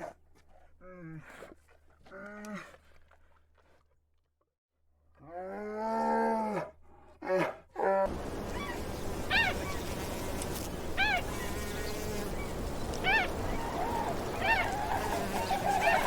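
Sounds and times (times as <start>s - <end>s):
animal calls: 8.1s - 16.0s
background hiss: 8.1s - 16.0s.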